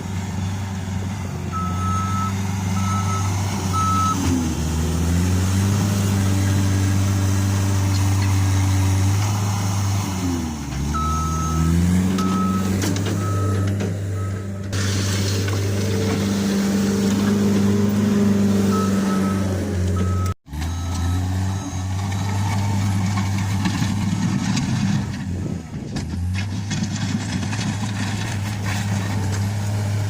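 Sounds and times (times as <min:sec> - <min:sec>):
diesel engine running under load: 0:00.0 - 0:30.0
reversing alarm beeps: 0:01.5 - 0:04.2, 0:11.0 - 0:14.6, 0:18.7 - 0:22.4.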